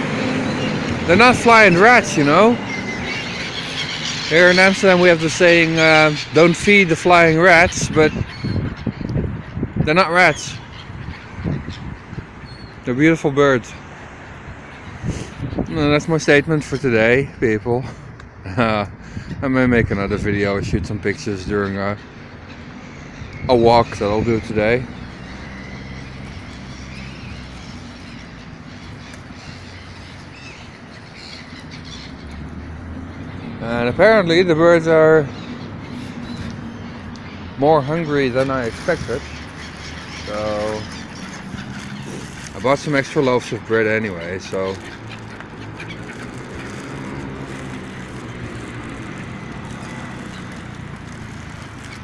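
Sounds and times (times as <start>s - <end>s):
vehicle engine passing by: 0.0s - 4.6s, 32.0s - 34.0s, 35.2s - 52.0s
birds calling: 0.0s - 52.0s
low hum of street traffic: 0.0s - 52.0s.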